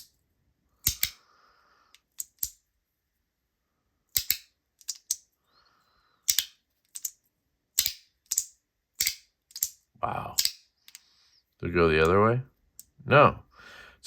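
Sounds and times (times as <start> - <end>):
sharp plastic clicks: 0.8 - 1.2, 4.1 - 5.3, 6.2 - 11.0.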